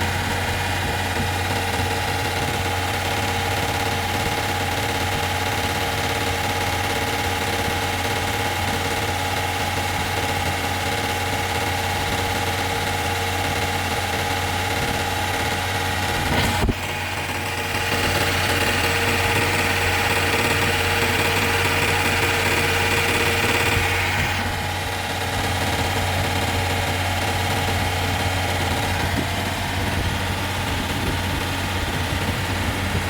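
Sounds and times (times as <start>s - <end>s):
machinery humming: 16.2s - 33.0s.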